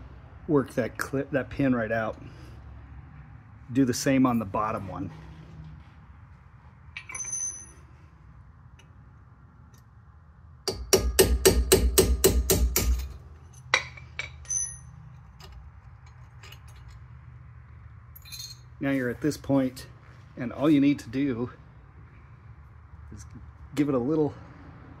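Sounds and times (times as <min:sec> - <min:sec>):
metallic tool clinks: 0:07.0 - 0:07.9, 0:12.9 - 0:15.5, 0:18.2 - 0:18.7
hammer tapping metal punch: 0:10.6 - 0:14.8.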